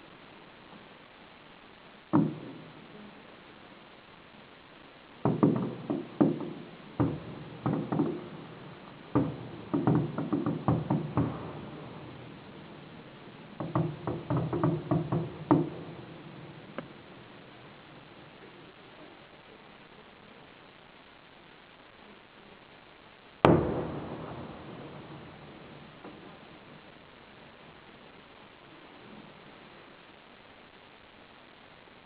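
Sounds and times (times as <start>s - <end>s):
fireworks exploding: 2.0s - 3.0s, 4.7s - 18.8s, 23.4s - 28.3s.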